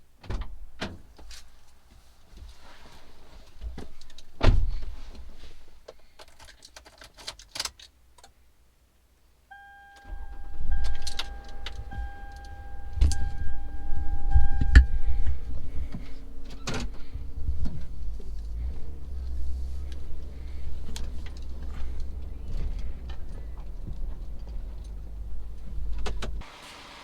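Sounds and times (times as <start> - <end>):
electronic warning tone: 9.5 - 15.5
low engine rumble: 9.5 - 26.4.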